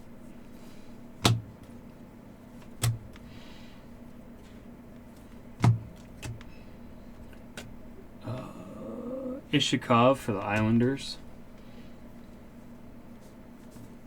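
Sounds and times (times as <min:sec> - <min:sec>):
low electrical hum: 0:00.0 - 0:14.0
cards tapped on table: 0:01.2 - 0:01.5.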